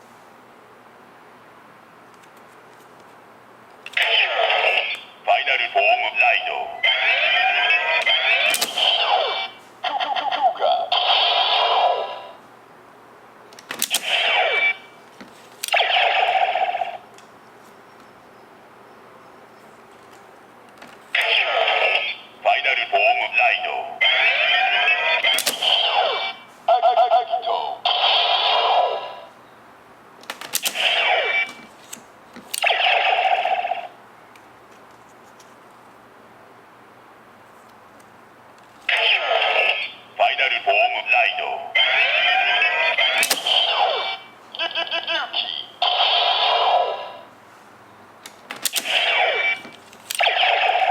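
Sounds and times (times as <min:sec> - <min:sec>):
toy electronic sound effects: 0:03.9 - 0:12.4, 0:13.8 - 0:14.9, 0:15.6 - 0:17.0, 0:21.2 - 0:29.2, 0:30.7 - 0:31.6, 0:32.6 - 0:34.0, 0:38.9 - 0:47.3, 0:48.7 - 0:50.9
sharp click: 0:08.5 - 0:08.9, 0:43.2 - 0:43.7.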